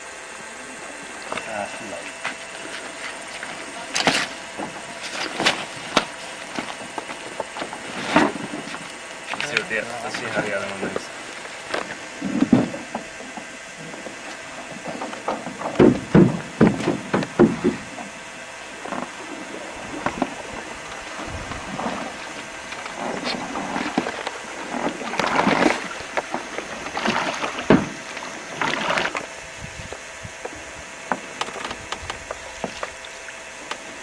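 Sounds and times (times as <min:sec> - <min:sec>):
paddle knocking against hull: 0:10.8 - 0:18.2, 0:18.8 - 0:29.3, 0:29.9 - 0:33.8
water splashing: 0:18.8 - 0:30.1.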